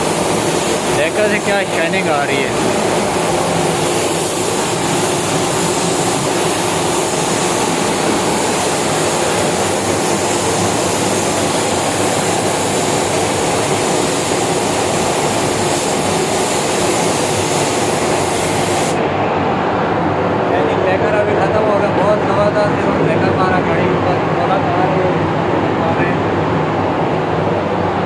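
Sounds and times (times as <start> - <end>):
spray gun hissing: 0.0 - 19.0
ventilation fans roaring: 0.0 - 28.0.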